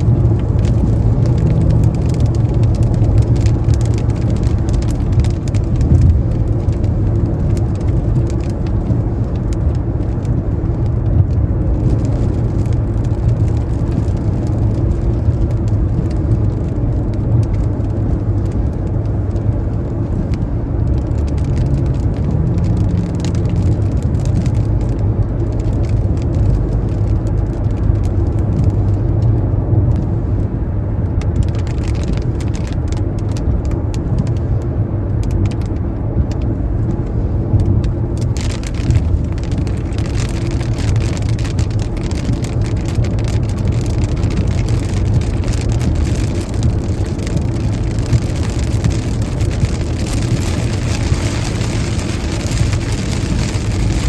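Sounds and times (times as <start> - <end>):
tyres rumbling on wet road: 0.0 - 54.0.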